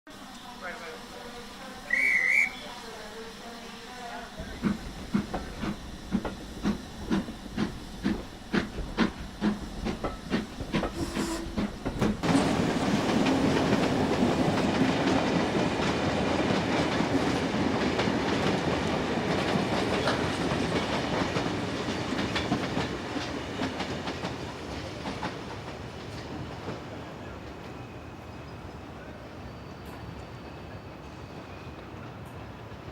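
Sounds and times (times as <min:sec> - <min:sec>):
steady hissing rush: 0:00.1 - 0:10.9
short high chirp: 0:01.9 - 0:02.7
model train rhythmic beat: 0:04.3 - 0:12.4.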